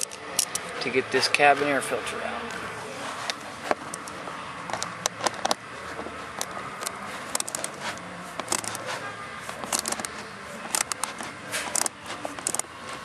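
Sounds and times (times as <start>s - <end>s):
socket wrench clicking: 0.0s - 0.7s, 6.4s - 8.8s, 9.4s - 12.7s.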